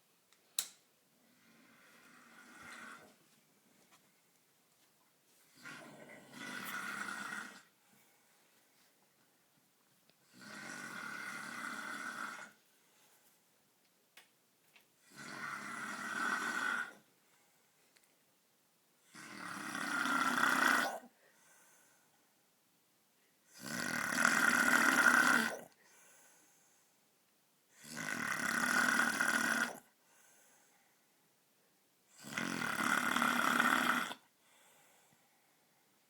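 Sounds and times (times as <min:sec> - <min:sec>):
man snoring loudly: 0:01.6 - 0:03.1, 0:05.6 - 0:07.7, 0:10.3 - 0:12.6, 0:15.1 - 0:17.0, 0:19.1 - 0:21.1, 0:23.5 - 0:25.7, 0:27.8 - 0:29.9, 0:32.2 - 0:34.2.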